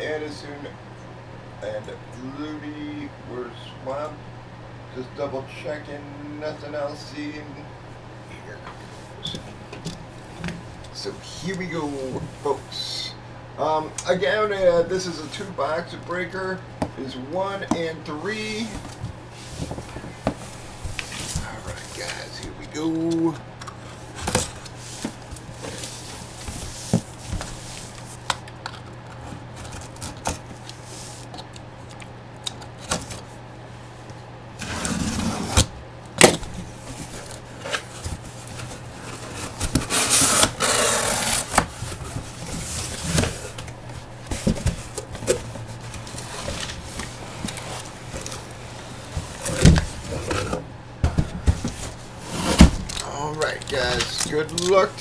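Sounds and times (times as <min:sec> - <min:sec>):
packaging rustling and tearing: 0:17.4 - 0:33.4, 0:35.6 - 0:55.0
cardboard clicks and knocks: 0:18.5 - 0:33.3, 0:35.6 - 0:55.0.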